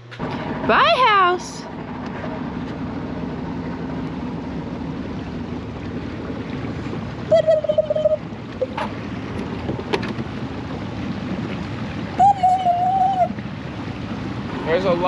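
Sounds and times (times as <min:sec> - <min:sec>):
motorboat engine humming: 0:00.0 - 0:15.0
water and wind noise: 0:00.0 - 0:15.0
high-pitched wavering whine: 0:07.2 - 0:08.8.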